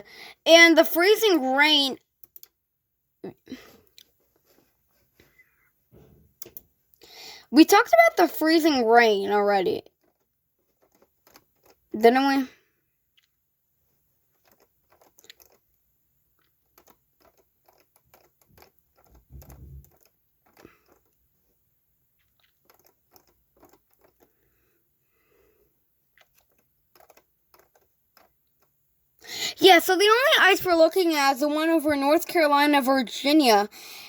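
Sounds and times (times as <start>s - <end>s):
faint small clicks and taps: 2.2s - 2.6s, 3.8s - 7.0s.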